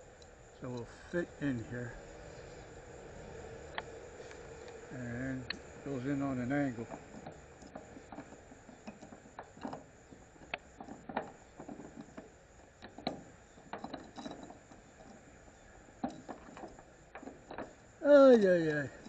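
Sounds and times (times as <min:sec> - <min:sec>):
metal clicks and clinks: 0:04.7 - 0:15.3, 0:16.0 - 0:19.0.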